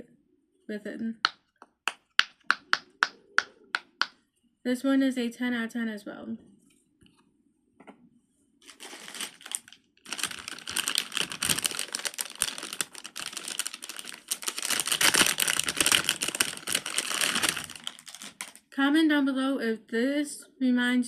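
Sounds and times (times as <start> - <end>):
plastic fidget toy clicking: 2.1 - 4.1.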